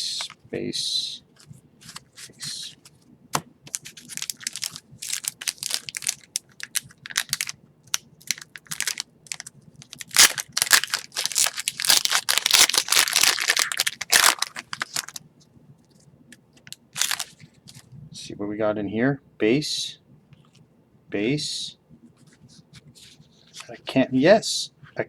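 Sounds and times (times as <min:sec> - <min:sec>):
card pack wrapper crinkling and tearing: 0:01.8 - 0:02.3, 0:03.7 - 0:15.2, 0:16.7 - 0:17.8.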